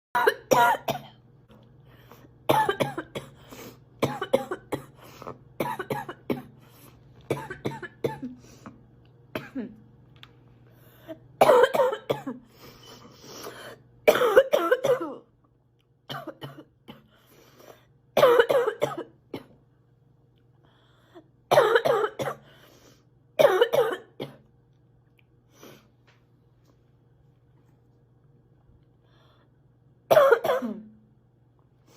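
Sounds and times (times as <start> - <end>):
girl coughing: 0.2 - 1.2, 2.5 - 5.0, 5.6 - 6.6, 7.3 - 8.4, 9.4 - 9.8, 11.4 - 12.5, 14.1 - 15.3, 16.1 - 17.1, 18.2 - 19.6, 21.5 - 22.5, 23.4 - 24.4, 30.1 - 30.9.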